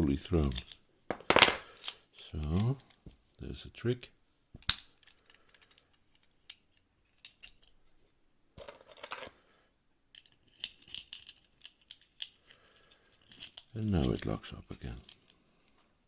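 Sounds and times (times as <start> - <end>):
lockpicking clicks and scrapes: 10.2 - 15.4.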